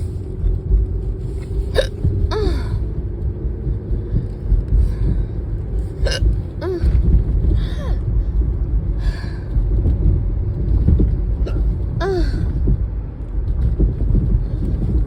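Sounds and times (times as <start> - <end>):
car cabin rumble: 0.0 - 15.0
person hiccuping: 1.8 - 2.7, 6.0 - 7.0, 11.5 - 12.2.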